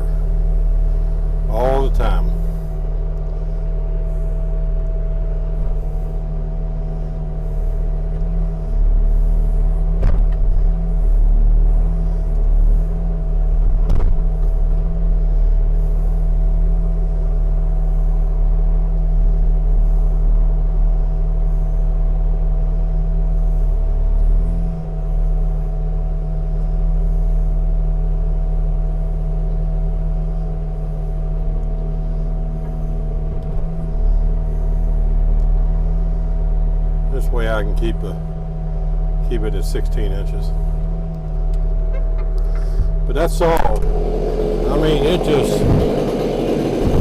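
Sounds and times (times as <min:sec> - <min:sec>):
chainsaw running under load: 0:42.5 - 0:47.0.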